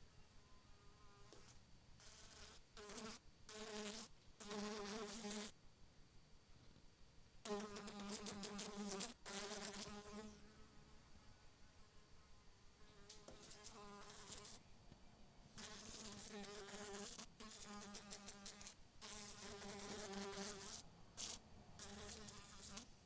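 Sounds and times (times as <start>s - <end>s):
housefly buzzing in flight: 1.1s - 5.5s, 7.5s - 10.8s, 13.0s - 14.6s, 15.6s - 22.9s.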